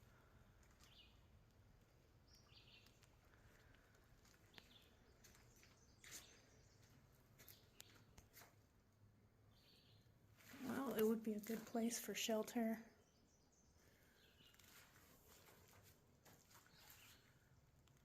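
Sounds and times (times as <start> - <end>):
faint high bird chirps: 4.4 - 8.1, 9.5 - 15.0, 16.5 - 17.5.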